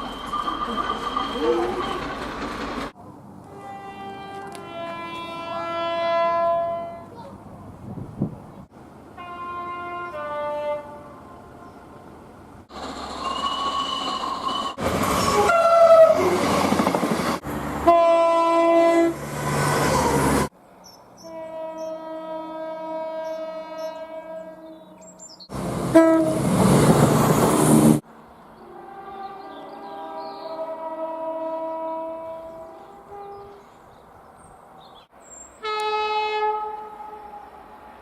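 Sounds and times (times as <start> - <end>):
passing train rushing: 0.0 - 6.9, 7.6 - 20.6, 25.5 - 30.0, 35.8 - 38.0
train horn chord: 3.4 - 7.1, 9.2 - 11.8, 17.8 - 19.2, 21.2 - 24.8, 25.9 - 26.5, 28.6 - 33.6, 35.6 - 37.6.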